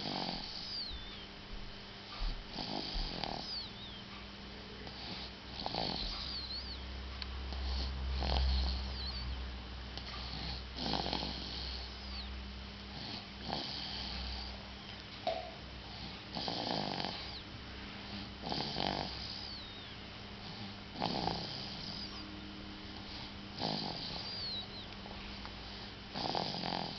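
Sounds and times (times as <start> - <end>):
person snoring: 2.5 - 3.7, 16.3 - 17.4, 18.4 - 19.7, 21.0 - 22.2, 23.6 - 24.6, 26.1 - 26.9.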